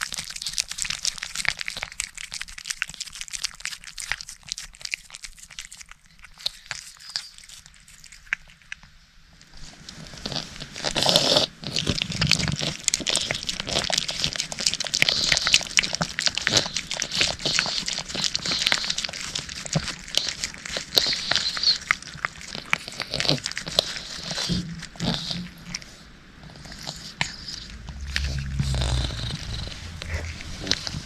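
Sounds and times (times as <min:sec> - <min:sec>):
cat licking and chewing: 0:00.0 - 0:31.0.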